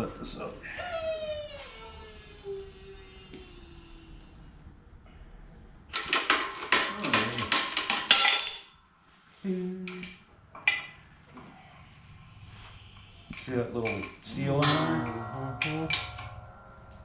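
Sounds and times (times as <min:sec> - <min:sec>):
metal parts clanking and rattling: 0:05.9 - 0:08.8
metal ringing clink: 0:13.3 - 0:17.0
tone sliding down in pitch: 0:14.7 - 0:17.0.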